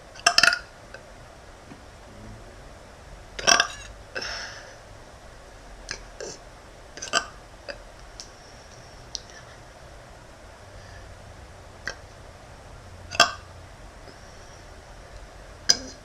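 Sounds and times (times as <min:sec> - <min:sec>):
woman burping: 0:15.7 - 0:16.0.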